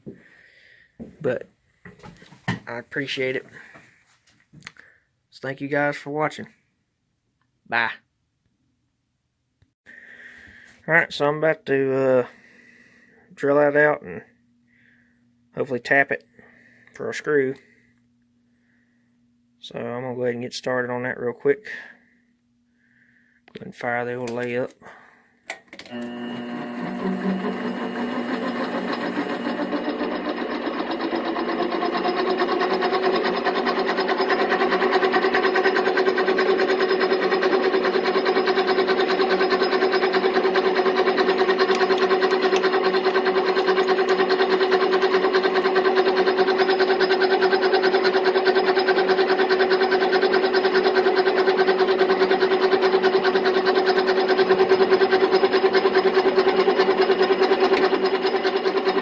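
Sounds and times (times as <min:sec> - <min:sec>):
lathe motor running: 0:25.9 - 0:59.0.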